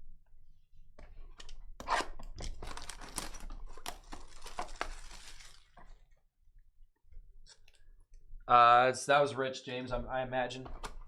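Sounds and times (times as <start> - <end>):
wrapper being torn and crinkled: 1.8 - 5.8.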